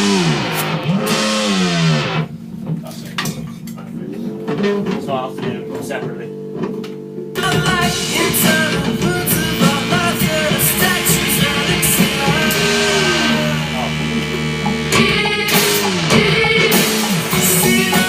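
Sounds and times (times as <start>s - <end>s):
loud rock music: 0.0s - 3.4s, 7.2s - 18.0s.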